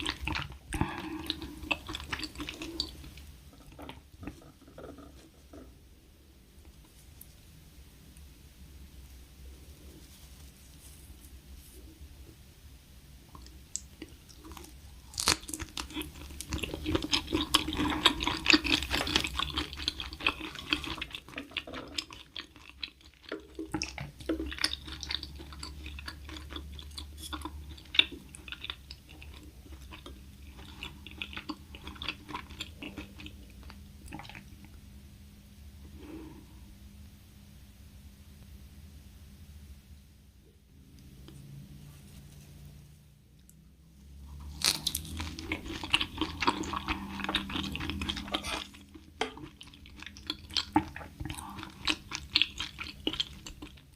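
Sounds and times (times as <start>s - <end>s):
person chewing and crunching food: 0.0s - 5.7s, 13.4s - 34.8s, 43.4s - 53.9s.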